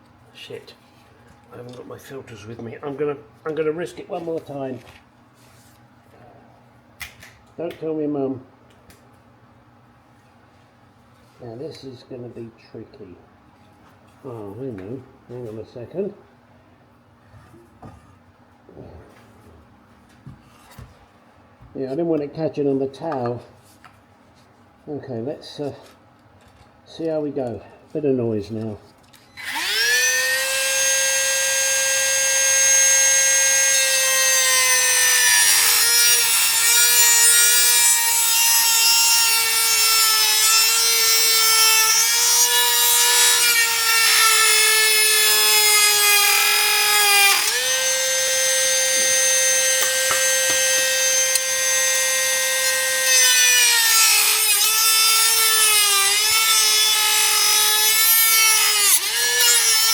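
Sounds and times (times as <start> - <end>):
power tool cutting fibreglass: 29.4 - 59.9.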